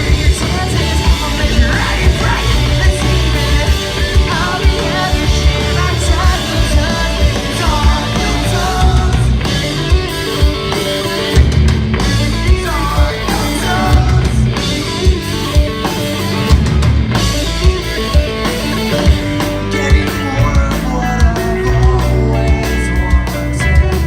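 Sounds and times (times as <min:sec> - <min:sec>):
person singing: 0:00.0 - 0:11.5, 0:12.1 - 0:15.4, 0:19.6 - 0:24.0
drum beat: 0:00.0 - 0:24.0
electric guitar: 0:00.0 - 0:24.0
rock band playing pop-punk: 0:00.0 - 0:24.0.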